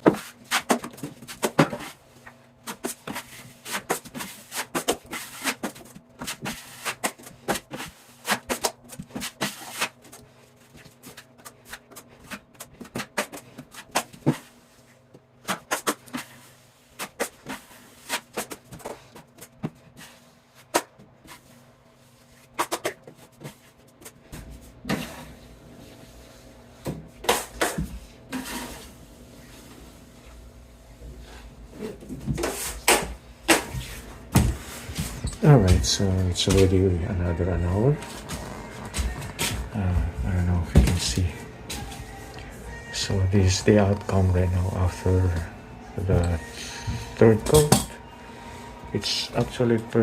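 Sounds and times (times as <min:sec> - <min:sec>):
drywall knife scraping compound: 0:02.7 - 0:10.0.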